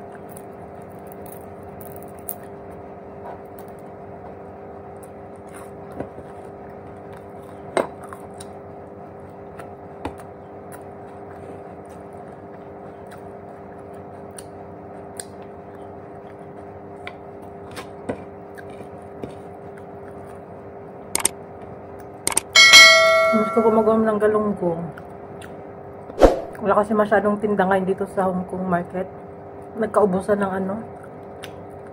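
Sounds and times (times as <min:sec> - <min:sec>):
crunching of fried fish: 0:00.0 - 0:02.6
steady background hum: 0:00.0 - 0:31.9
dishes or utensils tapping: 0:22.6 - 0:24.0.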